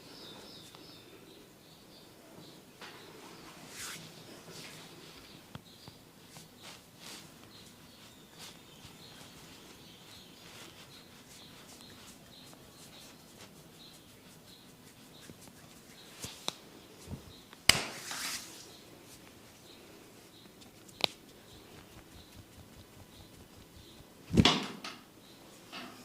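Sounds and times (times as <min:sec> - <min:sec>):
hands rubbing and tapping head: 0:05.6 - 0:24.8.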